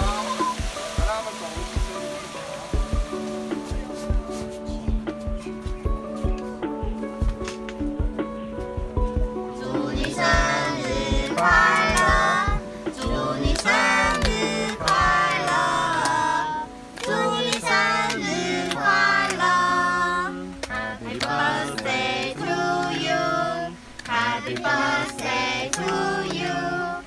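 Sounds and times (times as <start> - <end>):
light instrumental accompaniment: 0.0 - 27.0
high singing voice: 9.5 - 27.0.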